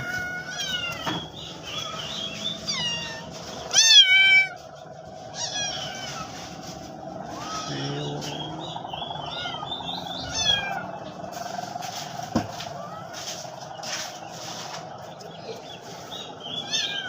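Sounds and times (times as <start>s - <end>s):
cat meowing: 0.0s - 4.6s, 5.3s - 6.6s, 7.2s - 8.3s, 9.2s - 11.0s, 16.6s - 17.0s.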